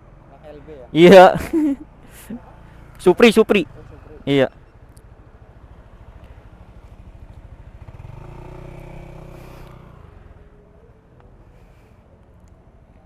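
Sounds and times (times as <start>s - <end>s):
motorcycle engine running: 5.0s - 10.5s
louder passing engine: 6.6s - 10.6s.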